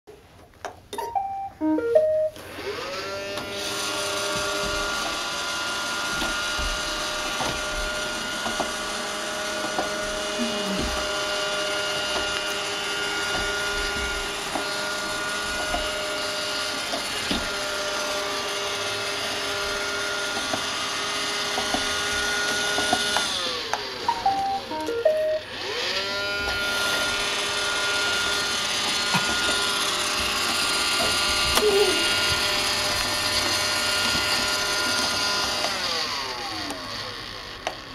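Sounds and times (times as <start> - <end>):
electronic beep tune: 1.0 - 2.4, 24.1 - 25.4
robot vacuum motors whirring: 2.4 - 24.1, 25.4 - 37.9.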